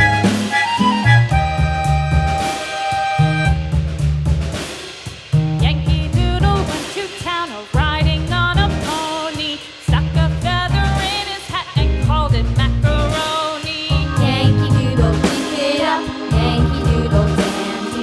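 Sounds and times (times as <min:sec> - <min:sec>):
upbeat song with sung melody: 0:05.6 - 0:18.0.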